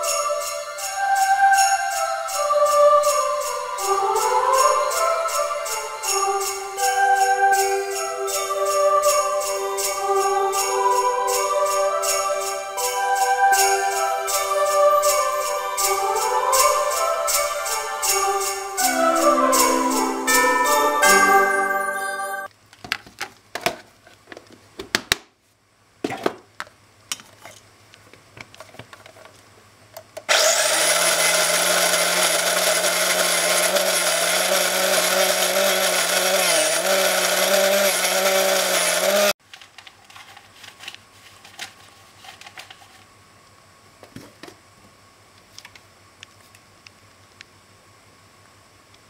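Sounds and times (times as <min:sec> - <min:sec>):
small electric motor running: 0:30.3 - 0:39.4.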